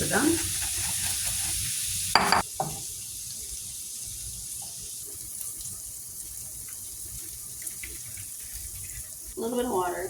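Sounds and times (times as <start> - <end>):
tap water running: 0.0 - 2.8, 6.6 - 10.0.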